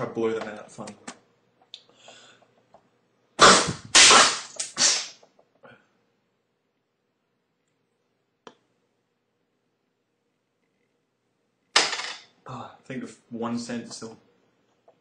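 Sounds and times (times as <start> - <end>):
person blowing air through nose: 3.4 - 5.2.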